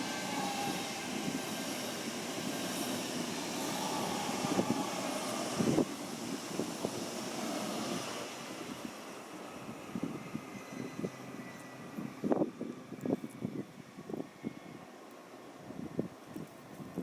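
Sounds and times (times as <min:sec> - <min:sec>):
train running past: 0:00.0 - 0:16.0.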